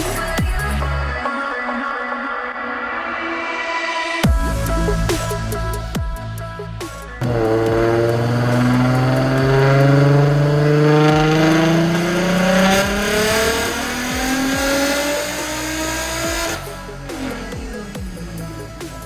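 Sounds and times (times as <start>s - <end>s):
car engine revving hard: 7.2s - 19.0s.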